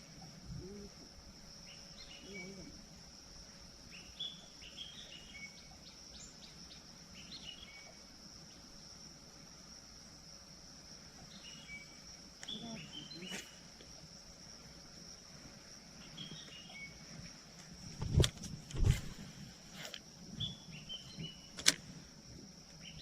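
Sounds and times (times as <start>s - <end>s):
insects droning: 0.0s - 23.0s
sharp click: 21.5s - 21.8s.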